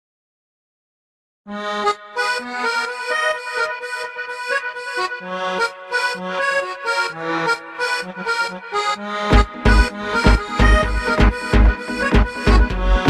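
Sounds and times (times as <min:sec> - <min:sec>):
accordion melody: 0:01.5 - 0:13.0
bass line: 0:09.0 - 0:13.0.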